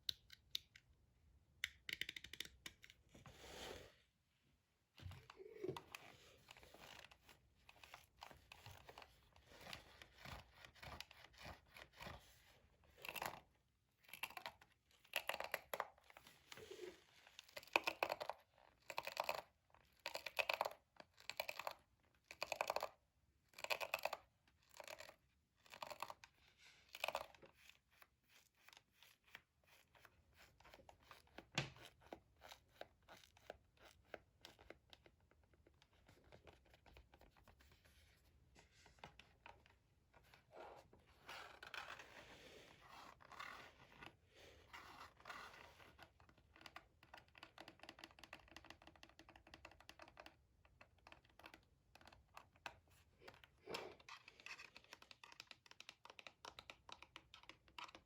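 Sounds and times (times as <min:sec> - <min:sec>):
keyboard and mouse clicking: 0:01.6 - 0:03.0.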